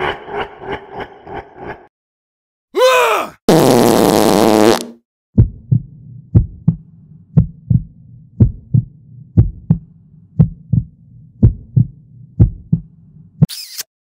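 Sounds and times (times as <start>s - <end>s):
heartbeat thumps: 5.4s - 13.0s.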